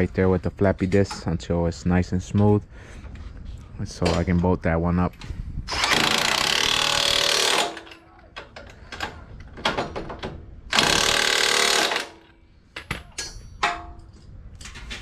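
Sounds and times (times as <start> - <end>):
air impact wrench bursts: 5.7 - 7.9, 10.7 - 12.3
metal clicks and knocks: 7.6 - 10.5, 12.7 - 15.0.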